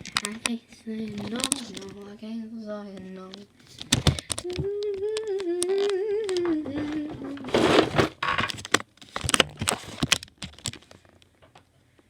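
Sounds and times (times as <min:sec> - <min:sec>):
rattling of small objects: 0:00.0 - 0:02.1, 0:03.4 - 0:11.6
girl humming: 0:04.4 - 0:07.6.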